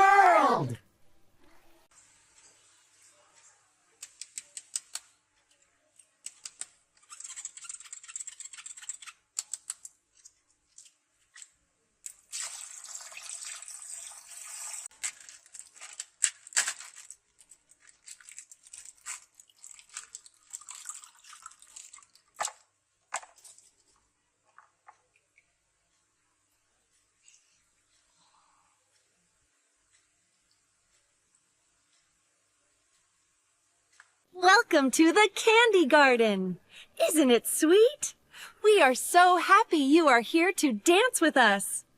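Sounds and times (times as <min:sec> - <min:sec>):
plastic packaging crinkling and tearing: 0:14.9 - 0:22.5.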